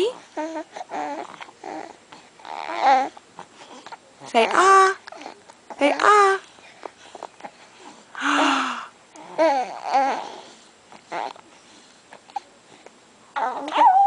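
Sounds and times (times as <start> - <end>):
infant babbling: 9.2 - 10.4, 13.4 - 14.0.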